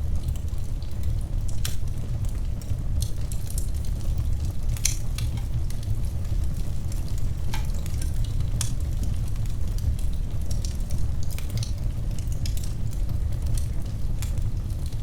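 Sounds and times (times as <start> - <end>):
low rumble of flames: 0.0 - 15.0
wood fire crackling: 0.0 - 15.0.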